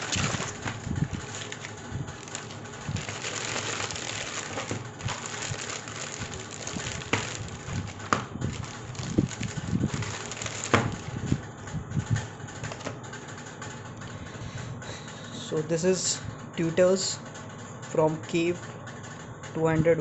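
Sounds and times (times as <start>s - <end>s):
packaging crackling and rustling: 0.0s - 11.5s.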